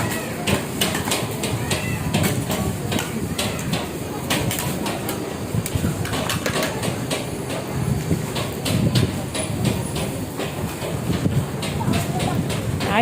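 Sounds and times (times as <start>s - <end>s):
dishes and utensils clattering: 5.8s - 7.6s.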